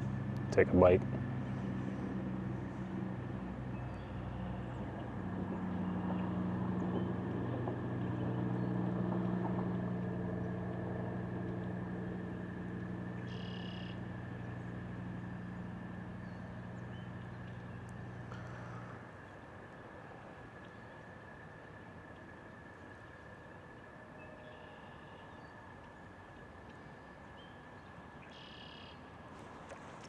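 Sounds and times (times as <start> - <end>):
distant engine passing: 0.0 - 21.8
bird chirp: 3.7 - 7.2, 12.3 - 18.9, 28.2 - 29.0.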